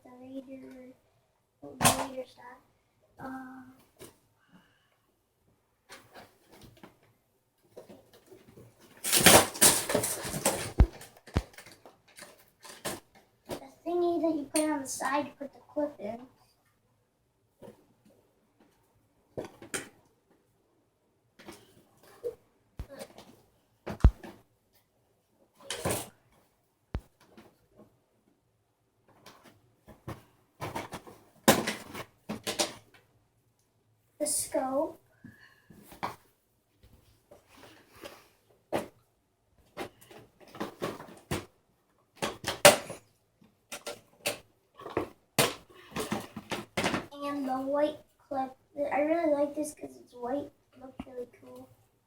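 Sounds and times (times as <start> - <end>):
plastic toy parts rustling: 7.7 - 13.6, 43.7 - 47.1.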